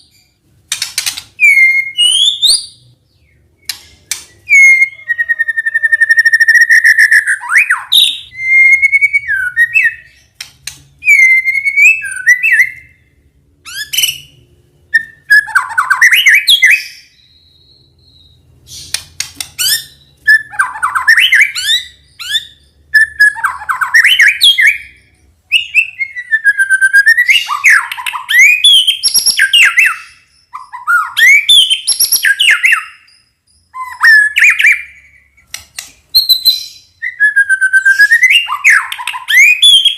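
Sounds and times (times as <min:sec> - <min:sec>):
bird singing whistled phrases: 0:01.4 - 0:10.2, 0:11.0 - 0:13.0, 0:19.6 - 0:35.5, 0:36.1 - 0:39.9.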